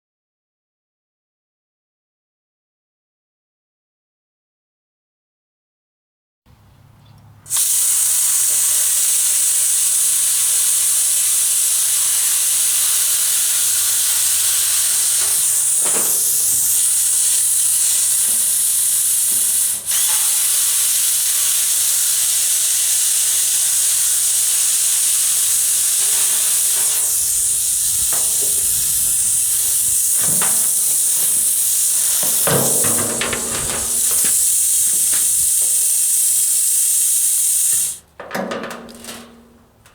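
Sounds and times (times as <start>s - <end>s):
loud steady hiss: 7.5s - 38.1s.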